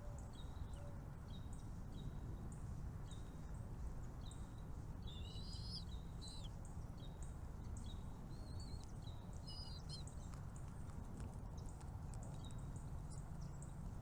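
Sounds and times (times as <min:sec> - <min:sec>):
small birds chirping: 0:04.2 - 0:13.8
birds twittering: 0:05.1 - 0:06.5, 0:07.7 - 0:10.4.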